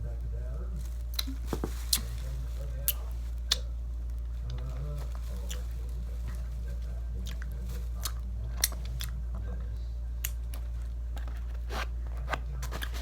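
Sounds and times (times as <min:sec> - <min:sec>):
steady low hum: 0:00.0 - 0:13.0
person chewing candy: 0:01.0 - 0:02.1, 0:02.7 - 0:06.5, 0:07.1 - 0:09.5.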